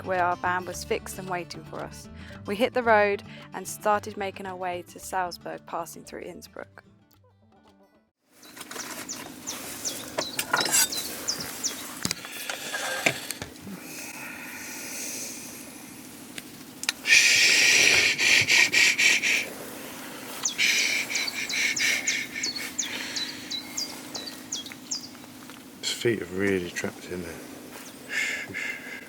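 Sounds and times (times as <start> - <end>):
high bird chirps: 8.4 - 12.0, 20.3 - 25.4
bird rasping distress calls: 8.4 - 13.4, 16.9 - 25.4, 27.5 - 29.0.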